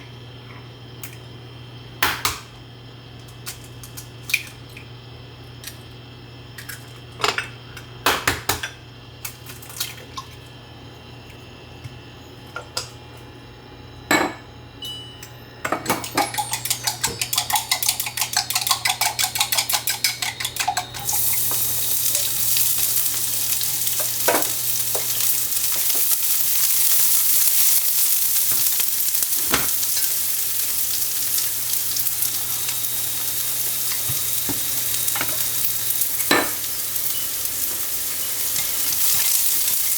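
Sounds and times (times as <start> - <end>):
kitchen utensils knocking: 15.7 - 21.1
utensils clattering: 15.7 - 26.2, 31.1 - 39.9
food sizzling in a pan: 20.8 - 39.9.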